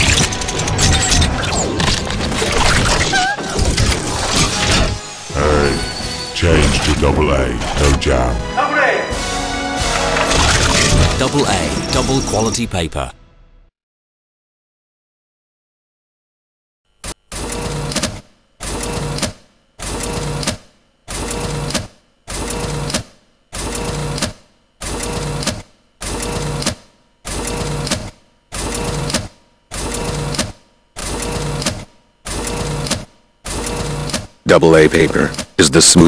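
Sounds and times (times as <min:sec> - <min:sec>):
photocopier mechanical whir: 0:16.9 - 0:35.8.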